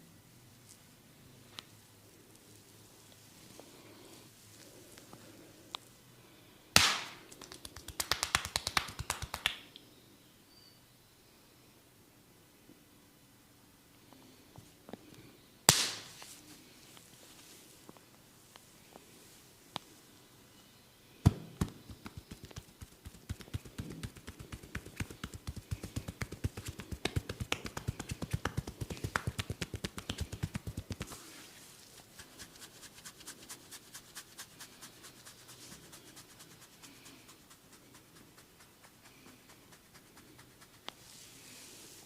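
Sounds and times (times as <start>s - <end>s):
hands tapping on head: 6.8s - 9.6s, 21.3s - 31.2s.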